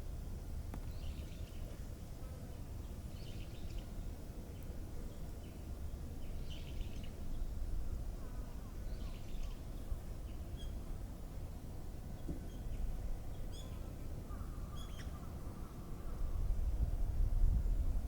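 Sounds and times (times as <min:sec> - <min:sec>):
low outdoor rumble: 0:00.0 - 0:18.0
small bird chirping: 0:12.4 - 0:15.3.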